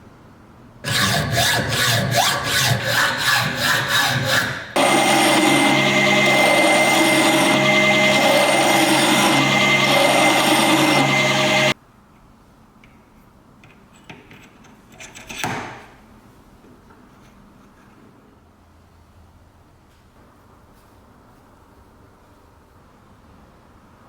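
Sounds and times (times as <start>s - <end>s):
power tool grinding: 0.8s - 11.8s.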